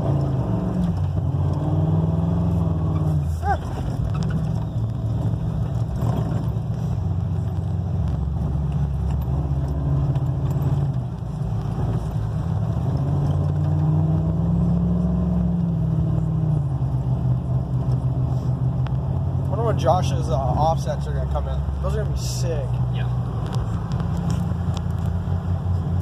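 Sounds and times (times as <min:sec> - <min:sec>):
truck engine running: 0:00.0 - 0:26.0.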